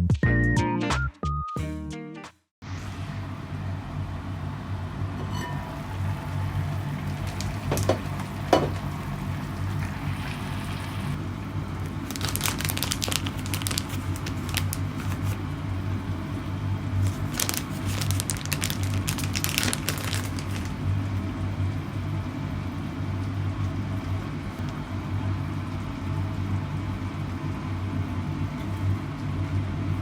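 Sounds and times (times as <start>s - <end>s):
steady low hum: 2.6s - 30.0s
plastic or paper crinkling: 11.9s - 15.5s, 17.0s - 20.8s.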